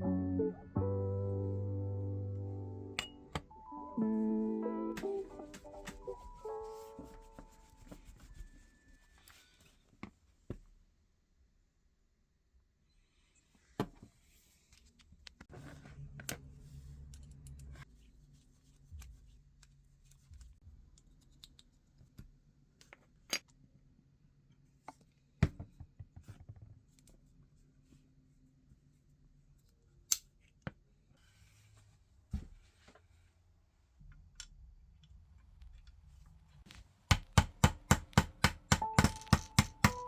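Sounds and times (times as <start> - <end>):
small tools clicking and tapping: 37.1 - 40.0.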